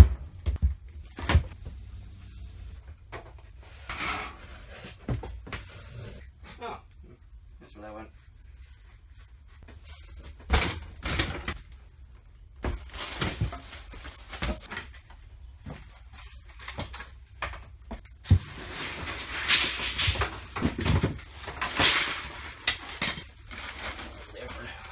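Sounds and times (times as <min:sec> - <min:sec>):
objects scraping: 0:01.7 - 0:06.6, 0:18.2 - 0:24.9
objects knocking and clunking: 0:02.8 - 0:05.7, 0:12.6 - 0:23.3.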